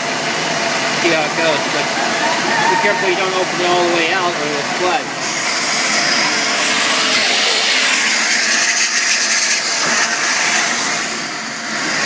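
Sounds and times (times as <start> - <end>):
vacuum cleaner sucking water: 2.8 - 12.0.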